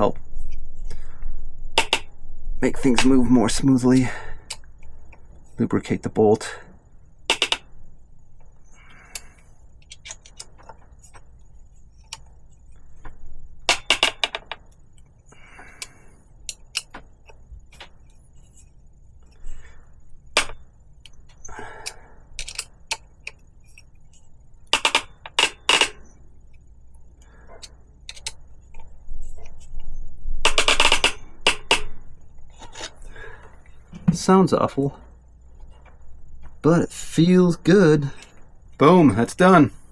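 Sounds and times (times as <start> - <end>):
wrench clicks: 7.3 - 7.6, 16.5 - 17.8.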